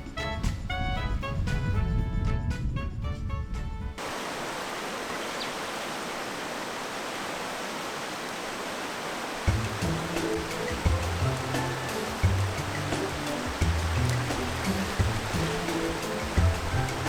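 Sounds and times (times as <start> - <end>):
stream water flowing: 4.0 - 17.0
music with a beat: 9.5 - 17.0.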